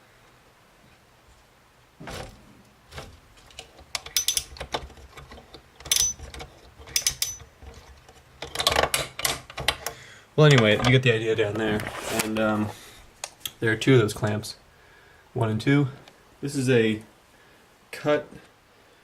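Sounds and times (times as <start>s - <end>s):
small parts clicking and rattling: 2.9s - 11.0s
soft scrape: 11.6s - 12.8s.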